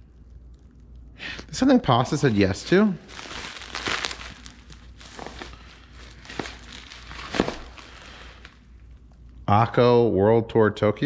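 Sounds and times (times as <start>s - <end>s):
packaging rustling and scraping: 2.0s - 9.4s.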